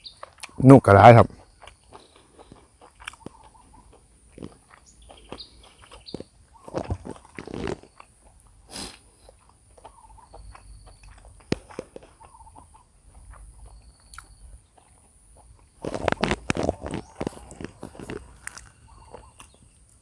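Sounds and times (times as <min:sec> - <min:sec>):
chewing noises: 0:00.0 - 0:00.6, 0:01.2 - 0:20.0
clattering and crunching: 0:05.8 - 0:08.4, 0:13.1 - 0:19.6
faint high bird chirps: 0:09.8 - 0:11.2, 0:12.2 - 0:14.7, 0:18.6 - 0:19.9.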